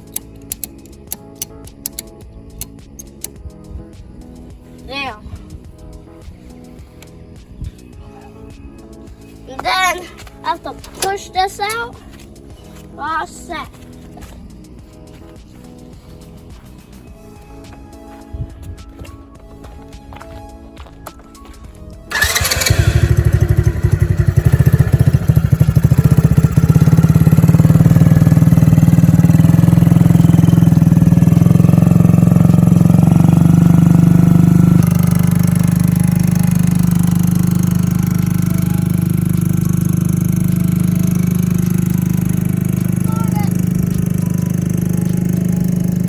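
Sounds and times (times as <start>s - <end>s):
atv engine starting and running: 22.1s - 46.0s.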